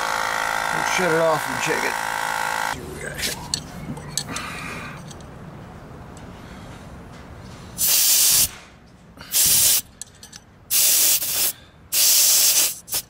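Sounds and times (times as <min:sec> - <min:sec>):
air hissing from tire valve: 0:07.8 - 0:08.6, 0:09.2 - 0:09.9, 0:10.7 - 0:13.0.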